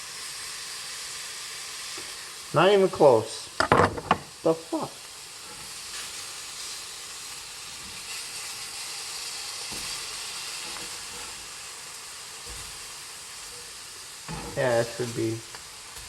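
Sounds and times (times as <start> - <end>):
patties sizzling in a skillet: 0.0 - 16.0.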